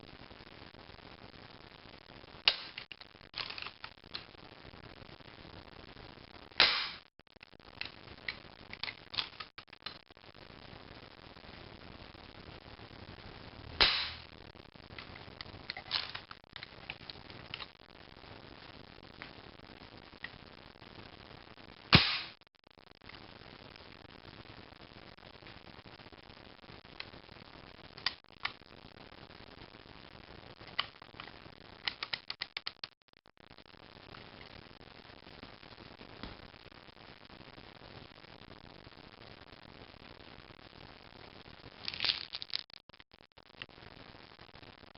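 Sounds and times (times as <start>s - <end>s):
air pistol shot: 6.6s - 7.0s, 13.8s - 14.2s, 22.0s - 22.4s.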